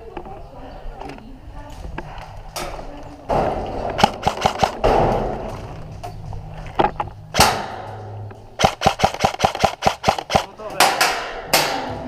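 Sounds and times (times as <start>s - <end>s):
airsoft rifle shots: 3.9s - 5.4s, 7.3s - 7.9s, 8.6s - 11.9s.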